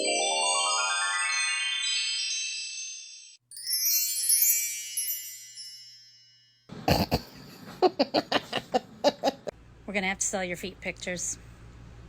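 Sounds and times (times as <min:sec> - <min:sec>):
sparkle chime: 0:00.0 - 0:06.7.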